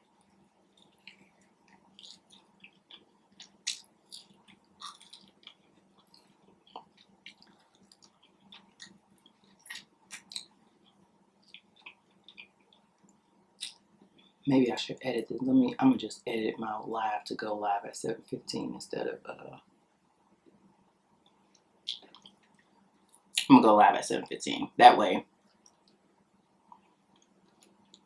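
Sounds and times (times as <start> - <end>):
chewing and mouth smacking: 0.2 - 14.3, 21.2 - 23.5.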